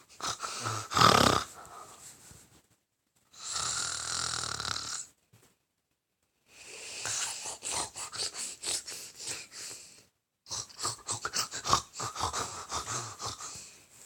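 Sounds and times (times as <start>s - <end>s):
raspy rattling snoring: 0.2s - 1.5s, 3.4s - 5.1s, 10.5s - 13.6s.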